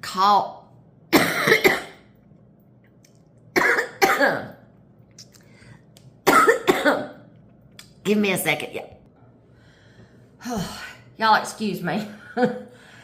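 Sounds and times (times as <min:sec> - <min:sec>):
woman coughing: 0:01.1 - 0:02.1, 0:03.6 - 0:04.6, 0:06.3 - 0:07.2.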